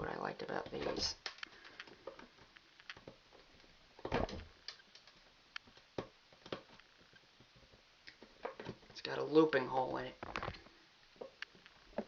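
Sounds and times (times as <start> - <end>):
wire strippers clicking: 0.6 - 3.2, 4.1 - 6.9.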